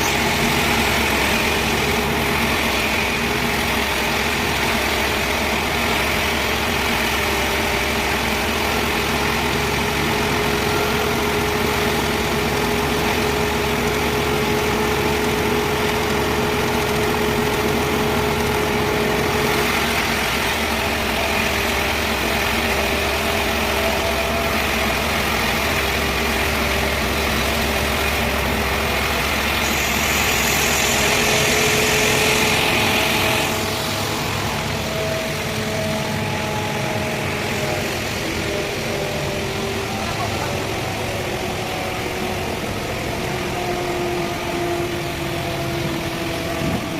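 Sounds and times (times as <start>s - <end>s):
saw cutting hiss: 0.0s - 41.5s
sawmill machinery running: 0.0s - 46.9s.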